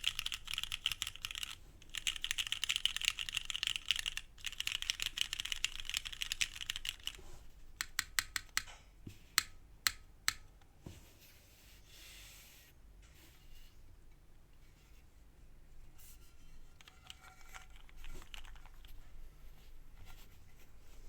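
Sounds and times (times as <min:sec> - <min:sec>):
mechanical keyboard typing: 0:00.0 - 0:07.2, 0:07.8 - 0:08.7, 0:17.6 - 0:19.0.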